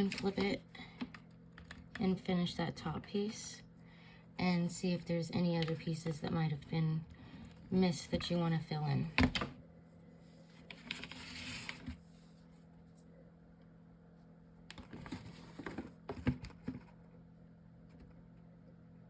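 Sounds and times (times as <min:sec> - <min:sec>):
faint steady hum: 0:00.0 - 0:19.0
rustling scrape: 0:10.4 - 0:12.6.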